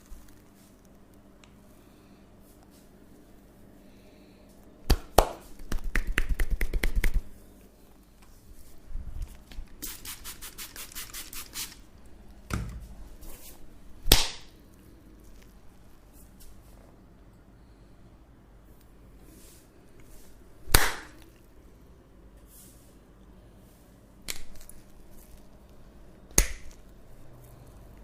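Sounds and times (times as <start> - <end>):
hands tapping on body: 4.9 - 7.2
sharp slaps: 4.9 - 7.2, 14.1 - 14.5, 20.7 - 21.2, 26.3 - 26.8.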